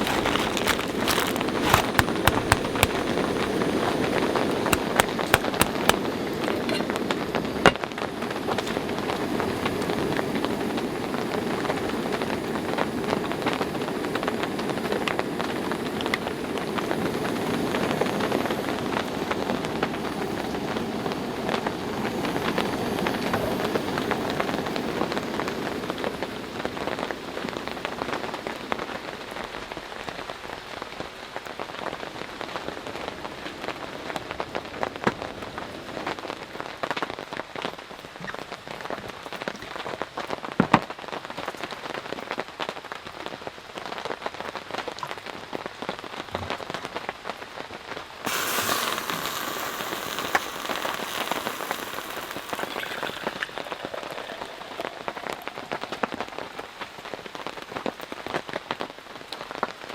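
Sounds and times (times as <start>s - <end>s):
heavy rain falling: 0.0s - 17.0s, 48.3s - 52.6s.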